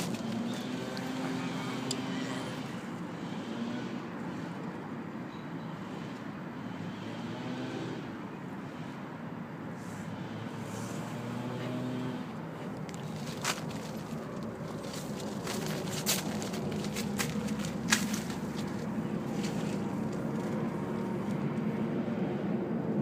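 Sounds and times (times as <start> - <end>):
distant traffic: 0.0 - 23.0.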